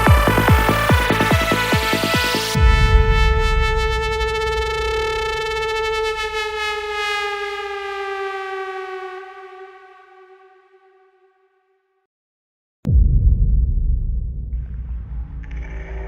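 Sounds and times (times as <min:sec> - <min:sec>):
low bass: 0:00.0 - 0:08.0, 0:12.9 - 0:16.0.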